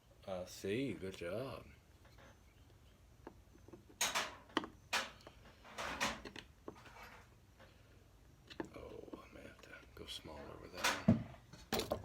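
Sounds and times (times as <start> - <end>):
hand tools clattering on workbench: 4.0 - 6.3.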